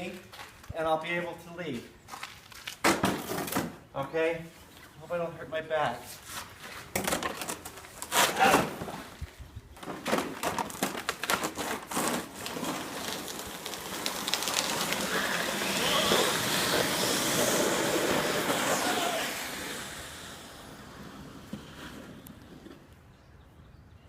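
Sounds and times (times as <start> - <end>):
sled knocking and scraping: 9.8 - 20.0, 20.6 - 22.9
sled grinding hiss on ice: 11.9 - 22.2.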